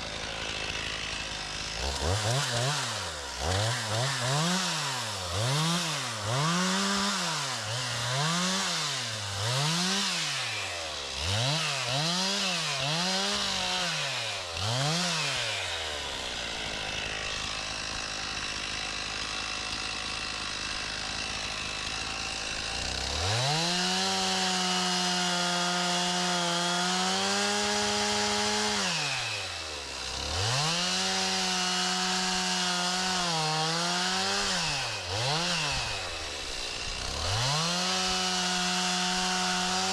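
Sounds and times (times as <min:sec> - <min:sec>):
chainsaw cutting wood: 0:00.0 - 0:39.9
chainsaw revving and idling: 0:00.0 - 0:39.9.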